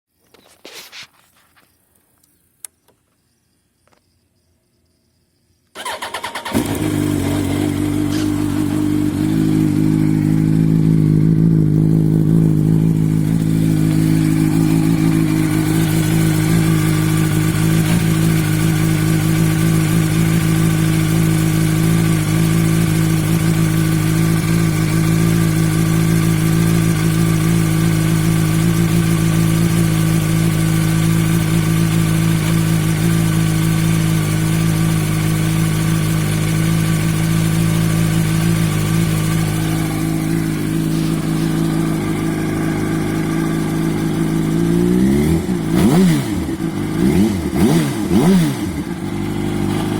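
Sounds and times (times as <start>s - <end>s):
motorcycle engine idling: 5.8s - 49.9s
strange clutch noise: 5.8s - 49.9s.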